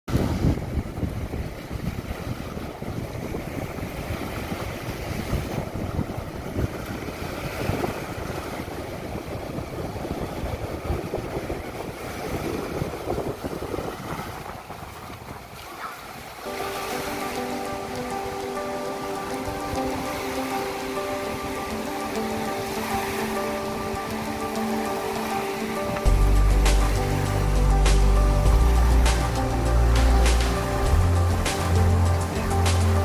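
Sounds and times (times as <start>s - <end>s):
wind buffeting microphone: 0.1s - 33.0s
steady rushing noise: 16.4s - 33.0s.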